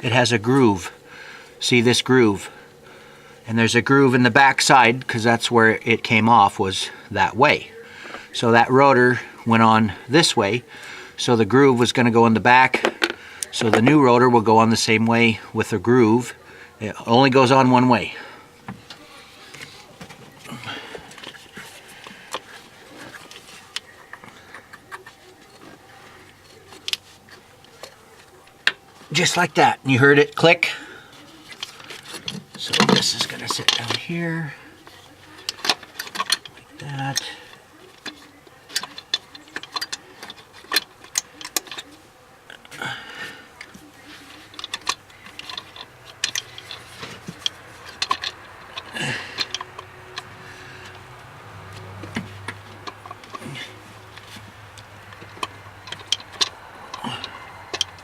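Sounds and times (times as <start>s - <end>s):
plastic parts clicking: 31.4s - 34.1s, 34.8s - 42.8s, 43.6s - 58.0s.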